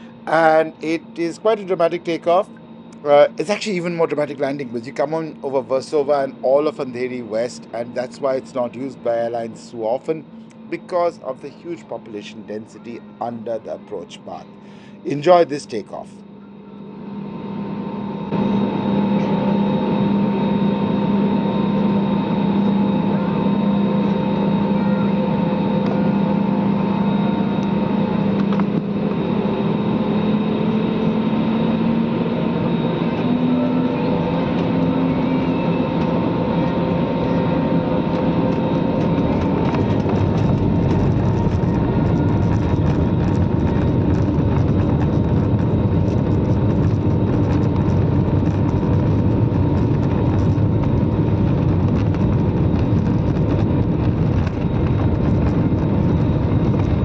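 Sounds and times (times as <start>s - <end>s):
jet engines humming: 0.0s - 57.0s
heavy low rumble: 17.1s - 57.0s.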